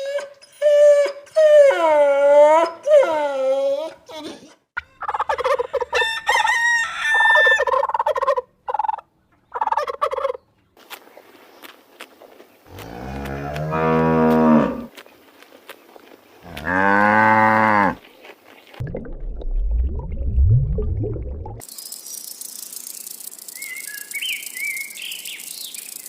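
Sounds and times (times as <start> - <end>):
cow mooing: 12.8 - 14.9, 16.5 - 18.0.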